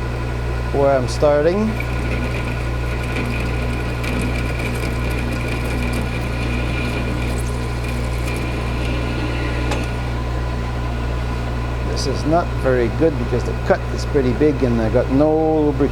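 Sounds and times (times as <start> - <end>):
lathe motor hum: 0.0 - 14.6
thin high whine: 0.8 - 10.4.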